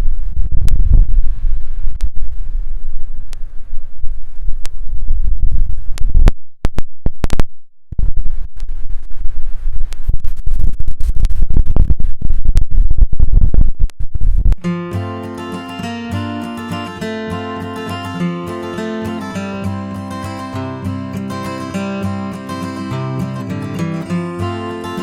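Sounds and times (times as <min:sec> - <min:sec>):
wind buffeting microphone: 0:00.0 - 0:06.3
acoustic guitar music: 0:14.6 - 0:25.0.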